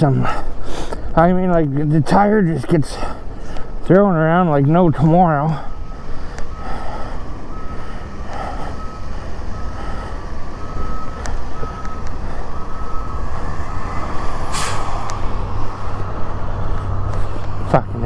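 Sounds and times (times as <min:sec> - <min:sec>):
low wind: 0:00.0 - 0:18.0
running rumble: 0:00.0 - 0:18.0
reversing alarm beeping: 0:03.9 - 0:14.5, 0:15.5 - 0:17.1
loud rush of noise: 0:13.3 - 0:17.2.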